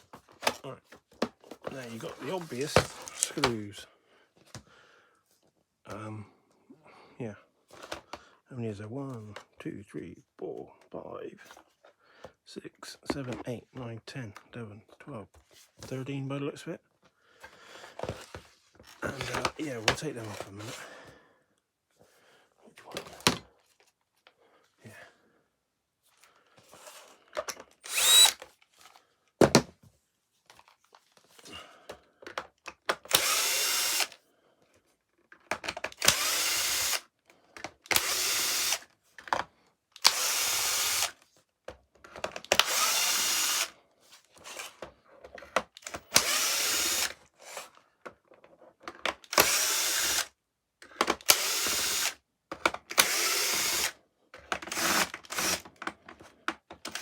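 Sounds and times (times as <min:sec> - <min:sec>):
clicks and knocks of plastic handling: 0:00.0 - 0:03.7, 0:17.8 - 0:20.7, 0:28.4 - 0:33.1, 0:34.7 - 0:36.0, 0:41.6 - 0:42.6, 0:48.0 - 0:49.3, 0:52.5 - 0:53.0, 0:54.3 - 0:57.0
power drill bursts: 0:27.8 - 0:28.4, 0:33.1 - 0:34.2, 0:36.0 - 0:37.0, 0:37.9 - 0:38.9, 0:40.0 - 0:41.2, 0:42.5 - 0:43.8, 0:45.8 - 0:47.6, 0:49.3 - 0:50.3, 0:51.2 - 0:52.2, 0:52.9 - 0:54.0, 0:54.6 - 0:55.6.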